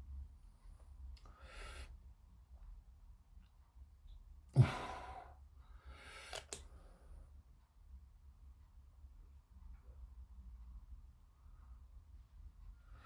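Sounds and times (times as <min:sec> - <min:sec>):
man sighing heavily: 0:04.6 - 0:05.3.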